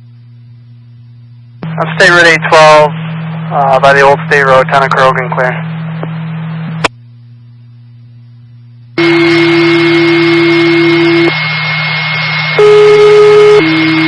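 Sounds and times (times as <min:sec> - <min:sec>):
faint low hum: 0:00.0 - 0:14.0
radio static: 0:01.6 - 0:06.9, 0:09.0 - 0:14.0.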